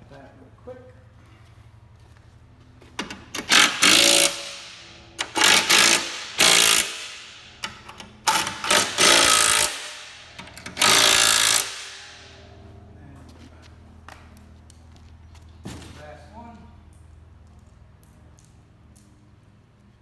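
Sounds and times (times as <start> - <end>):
impact wrench hammering rattle: 2.9 - 12.4.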